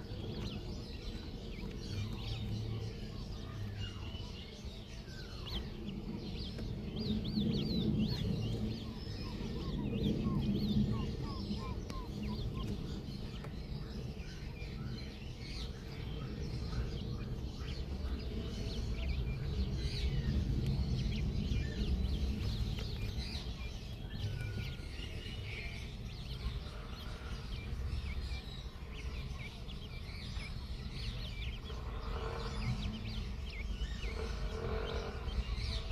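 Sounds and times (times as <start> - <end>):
chicks chirping and peeping: 0.0 - 35.9
chickens clucking: 5.5 - 13.6.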